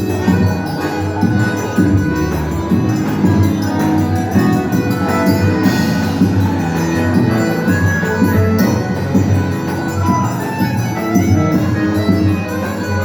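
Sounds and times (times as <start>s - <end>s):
instrumental band music: 0.0s - 13.0s.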